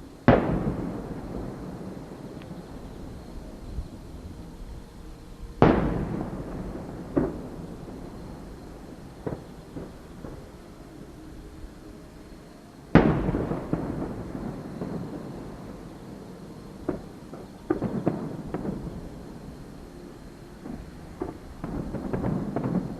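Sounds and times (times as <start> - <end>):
firework shells booming: 0.2 - 3.2, 5.6 - 10.4, 12.9 - 15.8, 16.8 - 19.3, 20.6 - 22.9
smaller firework bangs: 0.2 - 3.8, 5.6 - 10.6, 12.9 - 19.8, 20.6 - 22.9.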